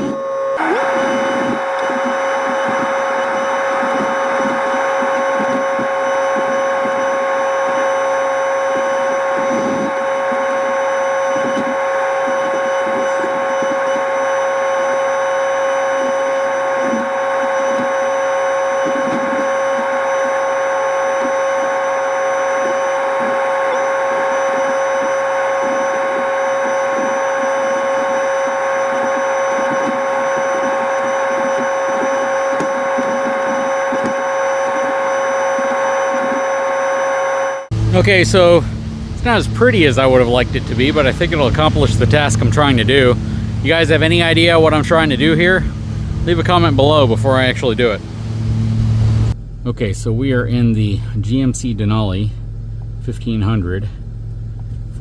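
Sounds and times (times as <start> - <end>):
high whine: 0.0 - 55.0
machine engine running: 0.0 - 55.0.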